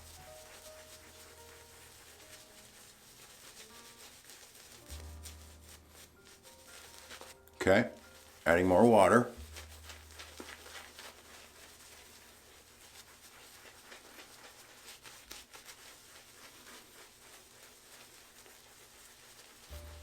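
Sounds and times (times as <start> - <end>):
shaving brush rubbing lather: 0.0 - 20.0.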